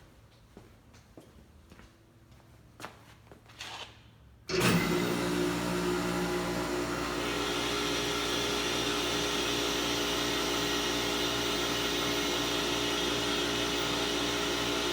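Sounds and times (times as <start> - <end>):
air compressor running: 4.5 - 14.9.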